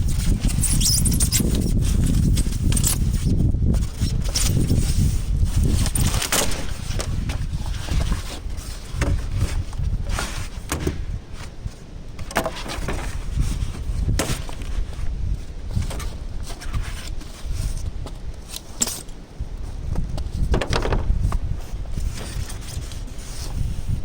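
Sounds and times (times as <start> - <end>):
foam board knocks and scrapes: 0.0 - 15.1, 20.0 - 24.0
steady low rumble: 3.3 - 12.2, 19.2 - 22.3.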